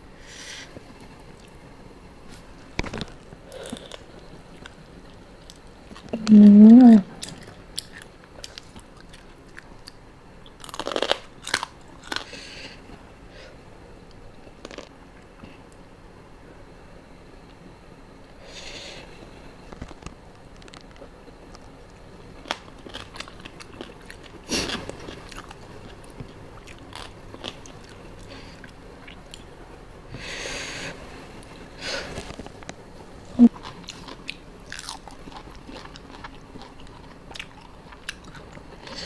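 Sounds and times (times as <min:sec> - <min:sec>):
chewing crunchy food: 0:02.3 - 0:06.2, 0:07.1 - 0:12.4, 0:14.5 - 0:15.4, 0:19.7 - 0:29.6, 0:32.0 - 0:39.0.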